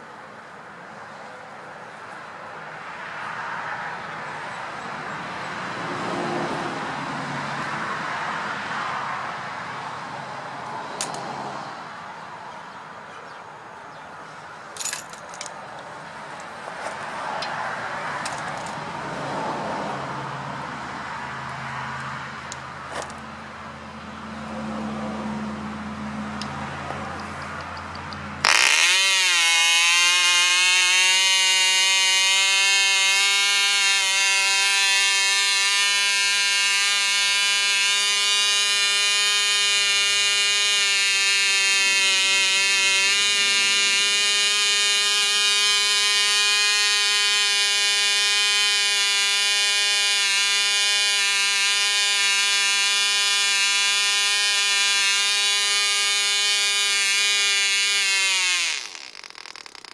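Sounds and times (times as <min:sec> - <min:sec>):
model engine buzzing whine: 0:14.8 - 0:59.9.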